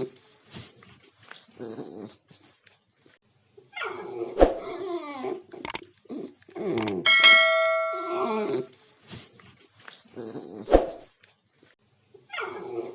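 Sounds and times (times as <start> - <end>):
bell-like ding: 6.8 - 8.6.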